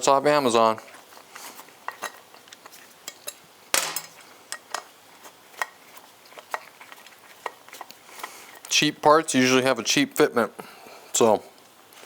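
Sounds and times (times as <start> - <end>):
metal hardware clinking: 3.1 - 4.8.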